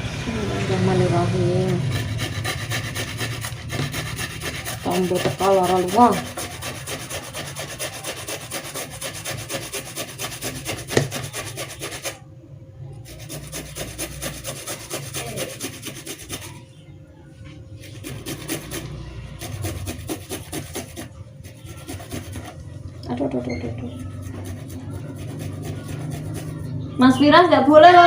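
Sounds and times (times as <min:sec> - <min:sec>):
ginger grated on metal grater: 0:01.3 - 0:12.2, 0:13.0 - 0:16.6, 0:17.8 - 0:22.7, 0:23.9 - 0:26.8.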